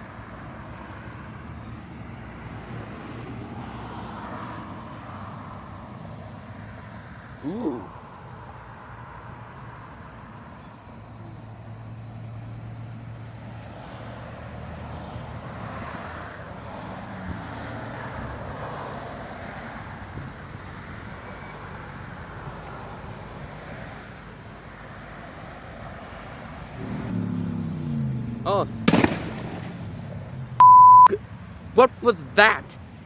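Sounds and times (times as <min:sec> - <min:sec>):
car engines at low speed: 0:00.0 - 0:31.8
vehicle passing: 0:00.4 - 0:07.4.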